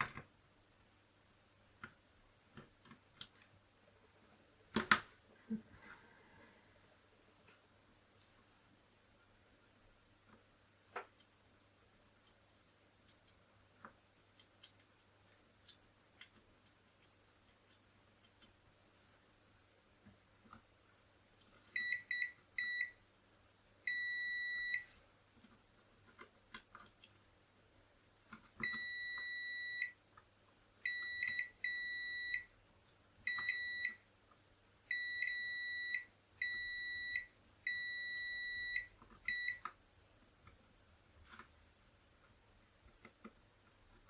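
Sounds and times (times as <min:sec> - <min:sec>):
test meter beeping: 0:21.8 - 0:23.0, 0:23.9 - 0:24.8, 0:28.6 - 0:30.0, 0:30.9 - 0:32.5, 0:33.3 - 0:34.0, 0:34.9 - 0:39.6.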